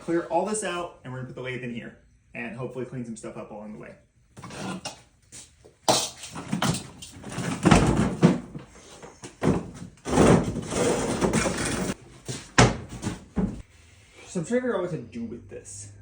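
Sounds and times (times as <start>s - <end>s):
workshop items knocking and clattering: 5.8s - 13.7s.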